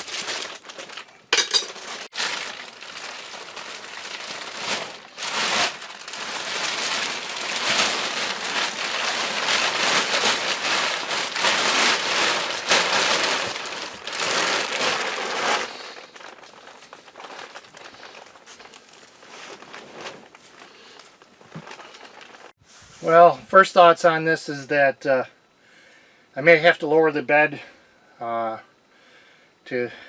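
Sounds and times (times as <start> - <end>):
faint crackles: 0.0 - 22.5
bedding rustling and crinkling: 0.0 - 23.2.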